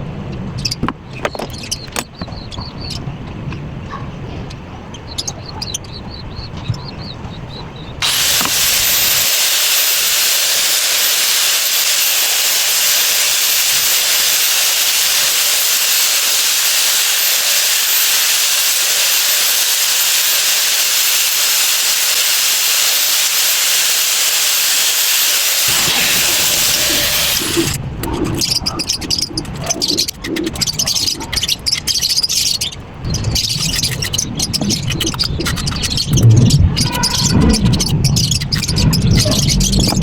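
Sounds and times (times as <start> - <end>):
loud steady hiss: 8.0 - 27.8.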